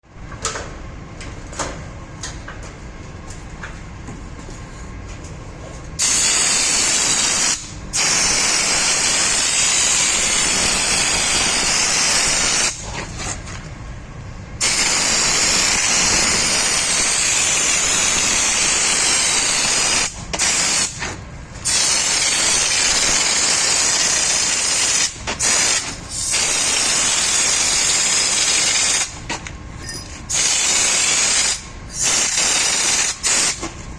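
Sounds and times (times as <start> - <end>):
spray hissing: 14.6 - 21.0.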